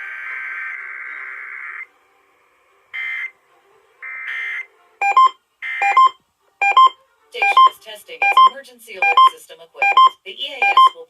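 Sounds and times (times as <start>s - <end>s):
short beeping tones: 4.4s - 11.0s.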